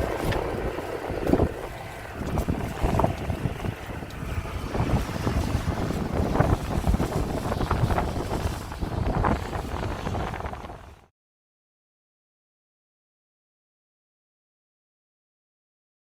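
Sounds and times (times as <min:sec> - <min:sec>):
wind buffeting microphone: 0:00.0 - 0:11.1.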